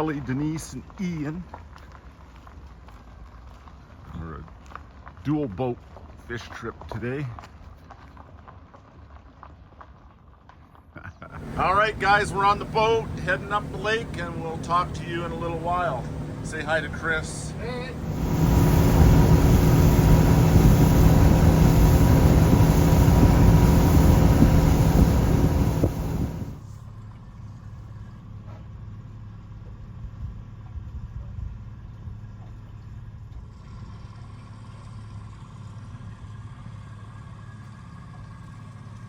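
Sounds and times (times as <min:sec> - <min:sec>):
faint low hum: 0:11.4 - 0:26.6
motorboat engine running: 0:11.4 - 0:26.6
wind and water rushing: 0:11.4 - 0:26.6.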